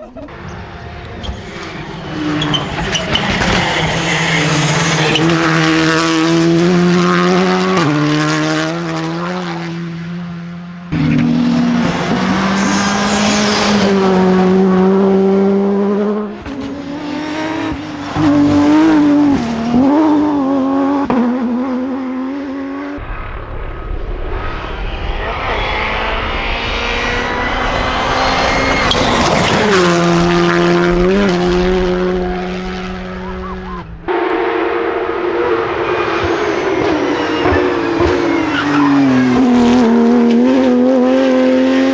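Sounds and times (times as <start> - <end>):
car passing by: 0.0 - 20.8, 23.0 - 41.9
rally car engines revving: 0.0 - 41.9.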